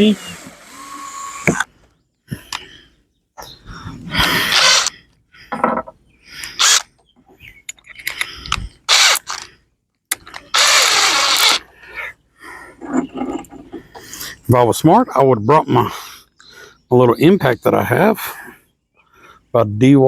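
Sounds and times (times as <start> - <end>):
cordless drill driving screws: 0.0 - 1.7, 4.3 - 4.9, 6.4 - 6.9, 8.9 - 9.5, 10.1 - 11.6.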